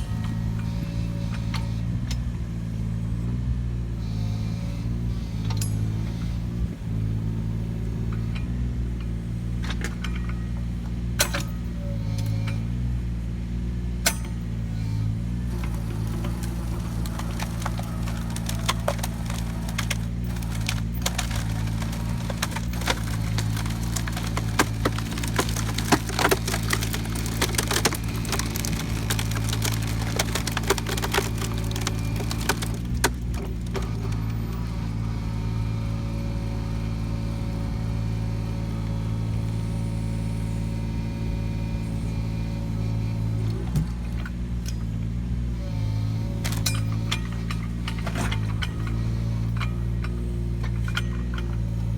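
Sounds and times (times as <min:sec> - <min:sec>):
diesel engine running: 0:00.0 - 0:51.9
log cracking and splintering: 0:14.6 - 0:44.0, 0:45.7 - 0:51.9.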